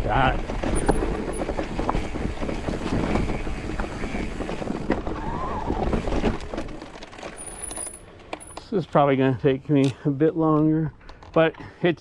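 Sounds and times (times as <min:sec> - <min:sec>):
bike knocking and rattling: 0:00.0 - 0:08.7
bike tyres on dirt trail: 0:00.0 - 0:09.8.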